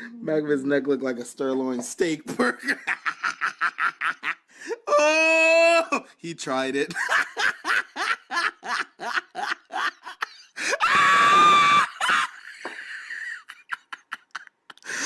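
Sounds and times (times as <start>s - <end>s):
person laughing hard: 2.4s - 6.0s, 6.9s - 15.0s
wheezy breaths: 4.5s - 4.9s, 10.5s - 10.8s, 14.8s - 15.0s.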